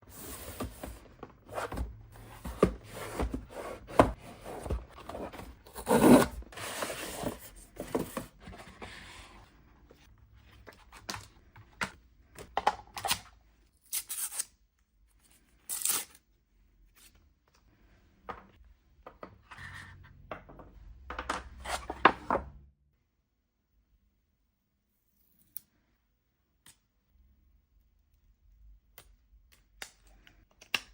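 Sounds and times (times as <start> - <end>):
cardboard and plastic scraping: 0.1 - 9.4.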